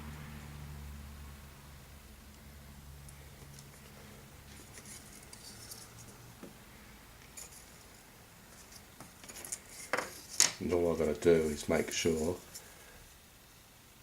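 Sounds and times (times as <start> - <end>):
wooden model parts scratching and tapping: 4.5 - 6.6, 7.2 - 12.7.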